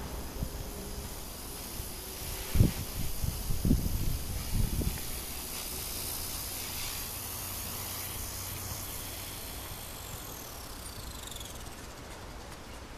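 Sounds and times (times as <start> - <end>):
wind buffeting microphone: 0.0 - 5.5
rc helicopter motor whining: 0.0 - 12.9.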